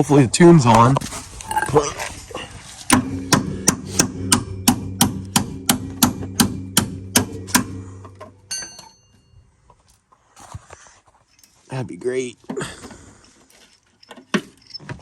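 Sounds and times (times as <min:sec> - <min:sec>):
steady low hum: 0:02.9 - 0:09.1
hammer striking metal: 0:02.9 - 0:09.3
metallic ring: 0:02.9 - 0:09.6.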